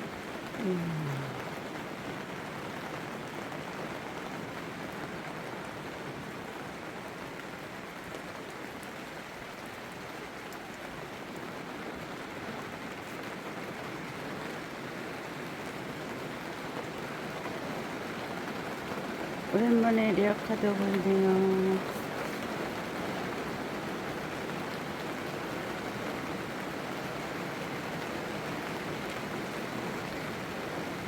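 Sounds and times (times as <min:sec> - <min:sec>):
steady rain falling: 0:00.0 - 0:31.0.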